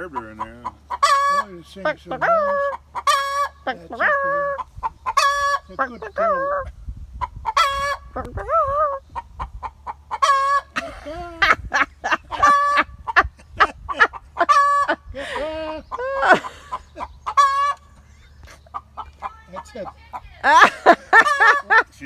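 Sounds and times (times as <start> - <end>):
hen cackling and squawking: 0.0 - 22.0
person imitating hen calls: 0.9 - 6.8, 7.5 - 9.0.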